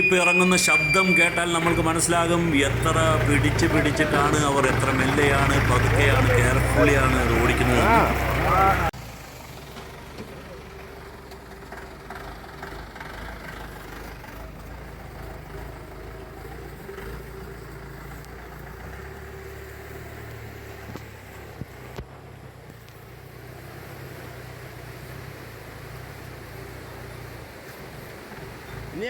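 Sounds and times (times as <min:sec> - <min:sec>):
jeep engine running at low revs: 0:00.2 - 0:29.0.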